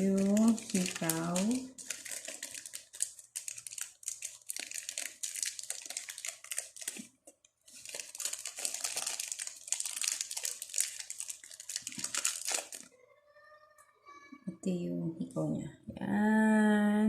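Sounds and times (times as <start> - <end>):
packaging crinkling and tearing: 0.0 - 12.9.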